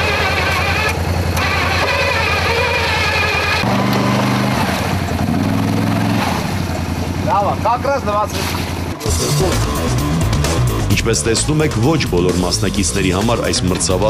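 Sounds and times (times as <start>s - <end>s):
vehicle engine droning: 0.0s - 14.0s.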